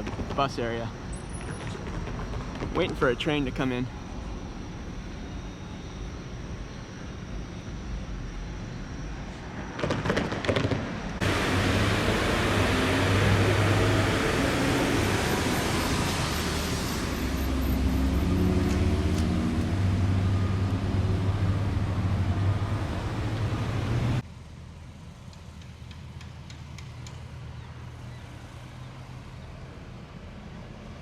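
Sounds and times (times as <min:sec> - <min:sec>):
traffic background: 0:00.0 - 0:31.0
large vehicle running: 0:11.2 - 0:31.0.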